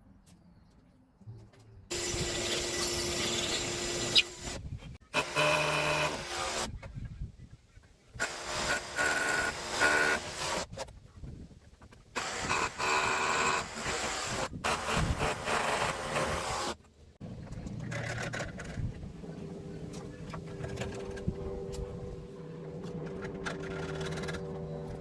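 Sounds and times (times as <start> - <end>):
power tool on timber: 1.9 - 6.7, 8.2 - 10.7, 12.2 - 16.8.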